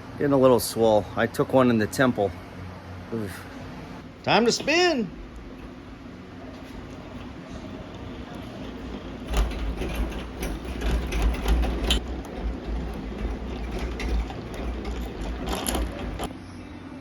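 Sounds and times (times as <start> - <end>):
honey extractor spinning: 4.0 - 16.4.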